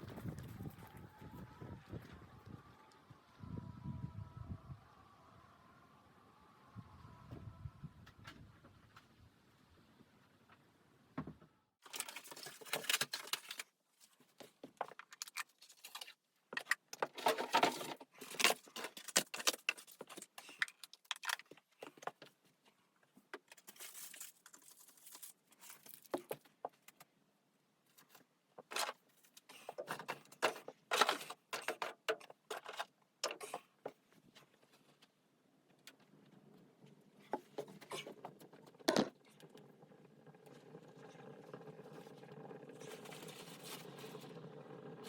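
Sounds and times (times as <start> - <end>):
rustling: 23.4 - 26.9.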